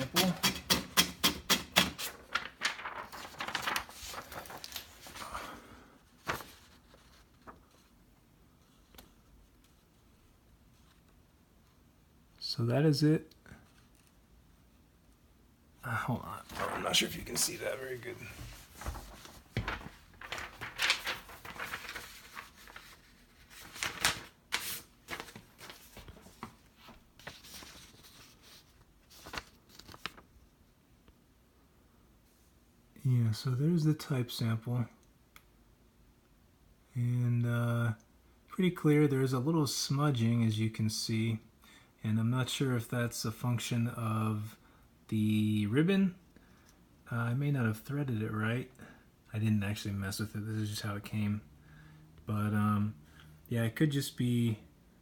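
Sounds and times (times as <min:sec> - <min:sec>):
paper rustling: 0:00.0 - 0:07.9, 0:16.3 - 0:30.3.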